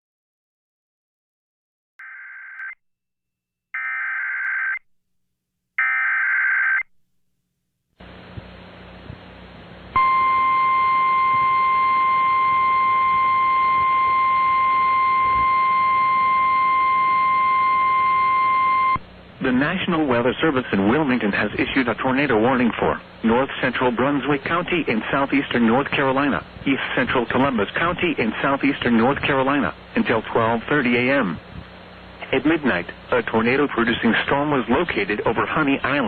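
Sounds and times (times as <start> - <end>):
steady warning alarm tone: 10.0 - 19.0
radio static hiss: 19.0 - 36.0.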